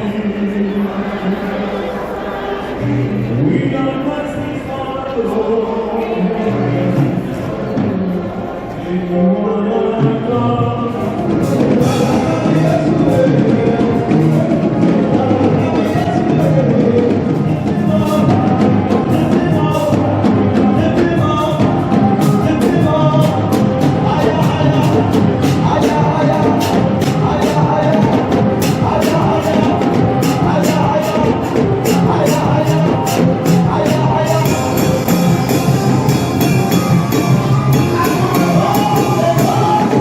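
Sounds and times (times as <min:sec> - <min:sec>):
group of voices singing a hymn: 0:00.0 - 0:40.0
drum and percussion: 0:10.0 - 0:40.0.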